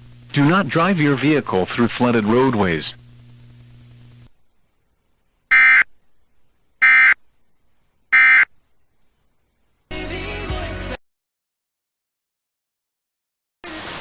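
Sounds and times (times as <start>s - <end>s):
shrill digital data squawk: 5.5s - 5.9s.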